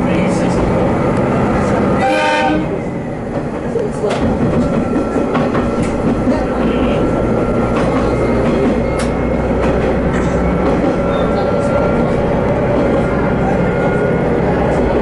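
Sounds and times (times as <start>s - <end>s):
railcar engine and wheels rumbling: 0.0s - 15.0s
train horn: 2.0s - 2.8s
rail-joint clicks: 3.3s - 14.0s.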